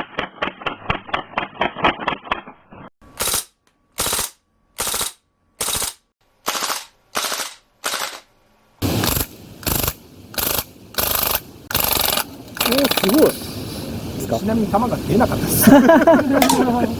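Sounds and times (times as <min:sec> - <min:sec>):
airsoft guns firing: 0:03.2 - 0:08.3.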